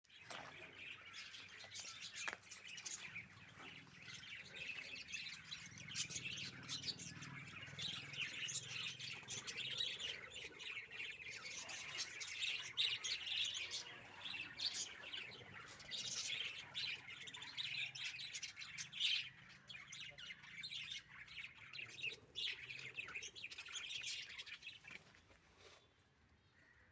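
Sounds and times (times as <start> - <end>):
lovebirds chirping: 0.0 - 26.9.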